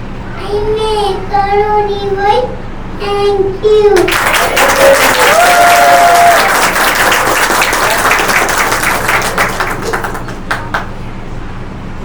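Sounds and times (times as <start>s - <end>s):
audience applauding: 4.0s - 11.0s.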